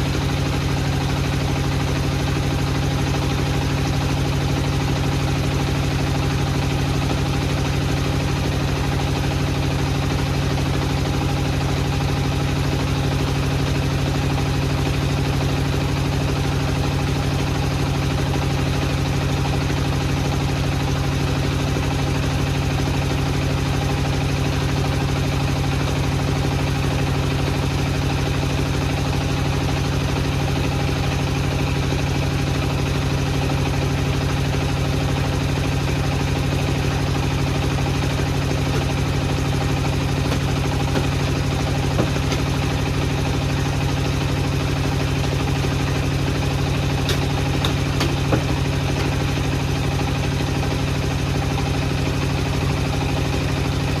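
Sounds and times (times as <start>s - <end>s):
wood machinery humming: 36.8s - 51.0s.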